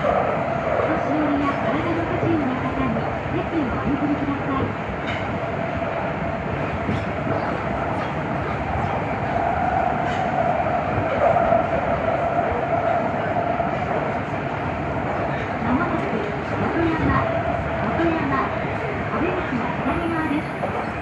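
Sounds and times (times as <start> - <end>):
subway train running in tunnel: 0.0 - 21.0
faint clicks from rails: 6.5 - 10.6.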